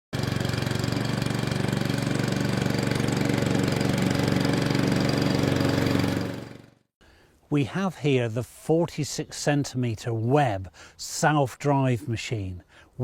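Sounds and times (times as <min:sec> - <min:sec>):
lawn mower engine running: 0:00.1 - 0:06.8.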